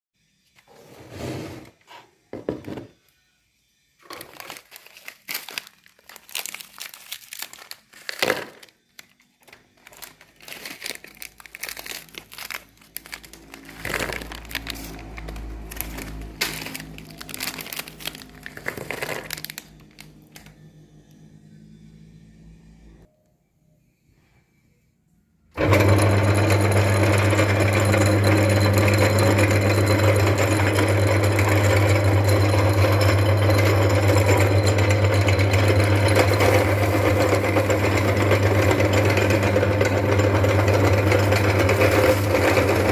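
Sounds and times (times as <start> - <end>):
grinder crunching wafers: 4.1 - 20.6, 25.6 - 42.9
electric meat grinder motor: 25.6 - 42.9.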